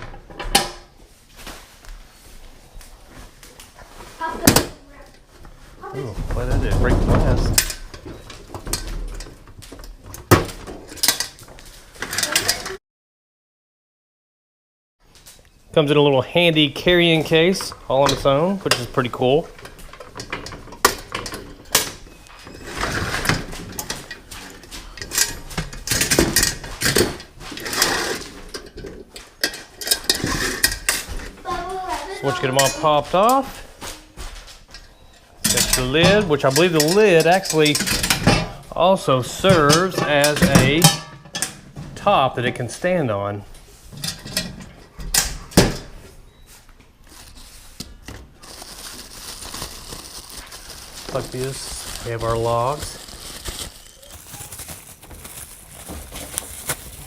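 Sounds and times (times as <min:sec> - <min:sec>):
plastic case rustling and clattering: 0:53.2 - 0:57.0.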